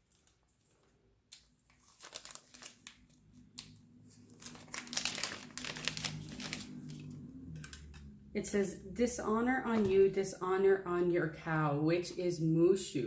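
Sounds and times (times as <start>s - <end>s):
packaging crinkling: 0.0s - 8.0s.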